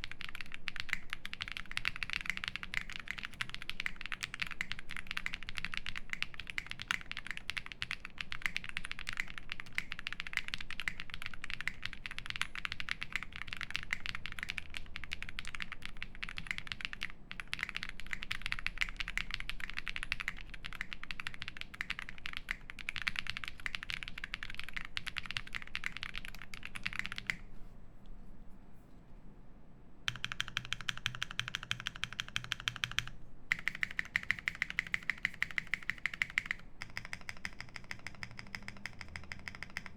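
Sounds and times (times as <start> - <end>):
mechanical keyboard typing: 0.0 - 27.4, 30.1 - 39.9.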